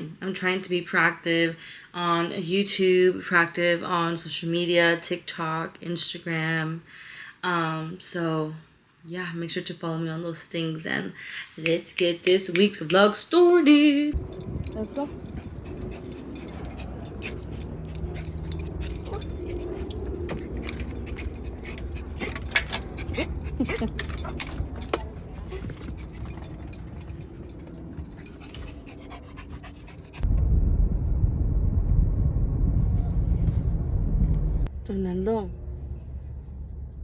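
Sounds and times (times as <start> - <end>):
dog panting: 14.2 - 30.2
metal tags jingling: 14.2 - 30.2
loud low rumble: 29.2 - 37.0.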